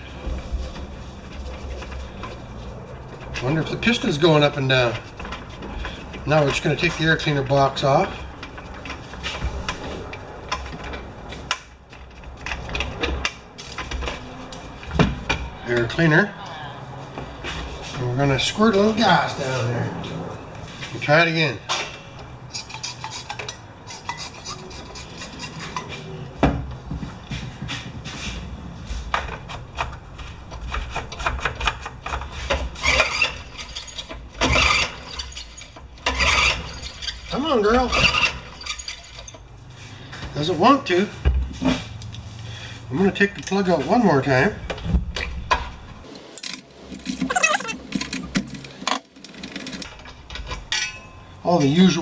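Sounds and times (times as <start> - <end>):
lawn mower engine cranking: 46.0 - 49.9
scraping and clicking: 46.0 - 49.9
starter rope rasping: 46.1 - 49.9.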